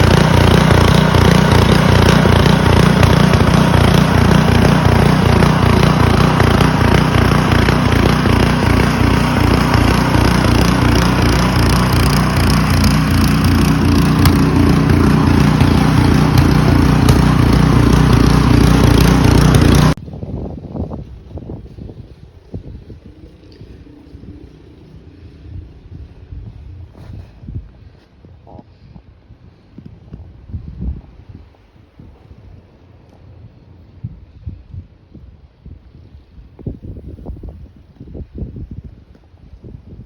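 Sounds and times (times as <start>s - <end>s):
engine running with low pulsing: 0.0s - 20.0s, 20.8s - 31.2s.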